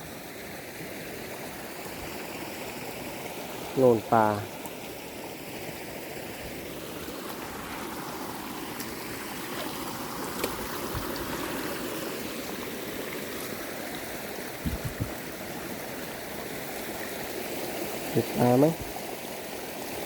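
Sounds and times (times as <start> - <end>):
water rushing along channel: 0.0 - 20.0
soft low thumps: 14.6 - 15.2.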